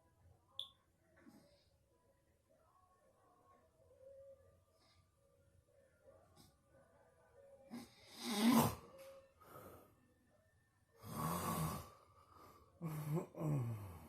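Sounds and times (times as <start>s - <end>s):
loud snoring: 8.1s - 8.8s, 11.0s - 12.0s.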